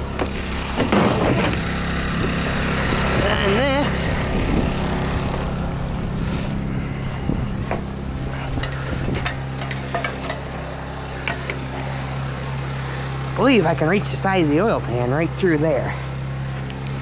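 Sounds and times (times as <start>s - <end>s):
portable generator engine running: 0.0s - 17.0s
light handling clicks and knocks: 7.6s - 12.3s.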